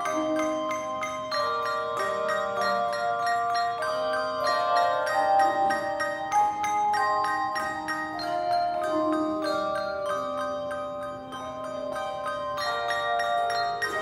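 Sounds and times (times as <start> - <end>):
handbells ringing: 0.0 - 14.0.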